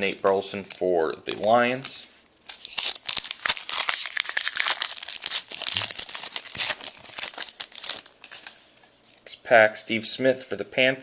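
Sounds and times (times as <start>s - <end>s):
foil wrapper crinkling and tearing: 2.5s - 8.6s.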